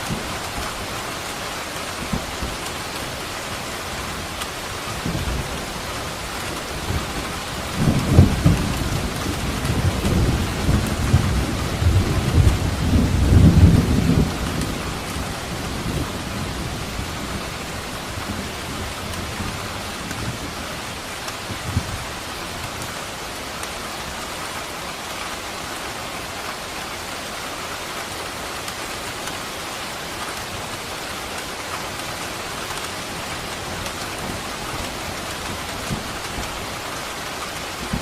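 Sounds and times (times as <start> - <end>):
steady rain: 0.0 - 38.0
thunder rumbling: 6.8 - 22.0.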